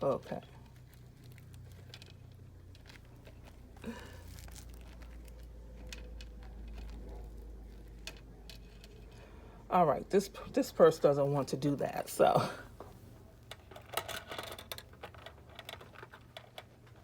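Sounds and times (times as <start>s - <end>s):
low steady hum: 0.0s - 17.0s
plastic toy pieces clicking: 13.5s - 17.0s.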